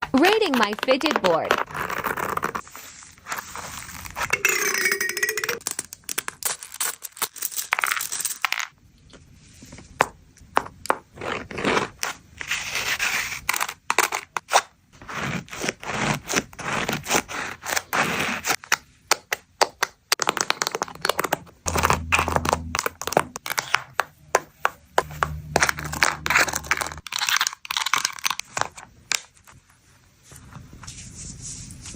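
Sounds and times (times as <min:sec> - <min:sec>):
low hum: 0:21.6 - 0:23.4, 0:24.9 - 0:27.1.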